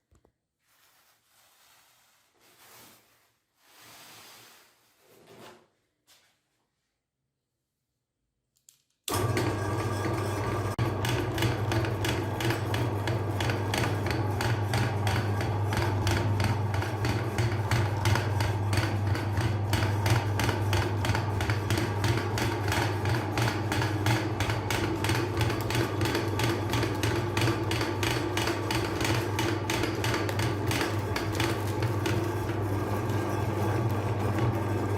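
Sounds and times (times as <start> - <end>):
meat grinder running: 9.1 - 34.9.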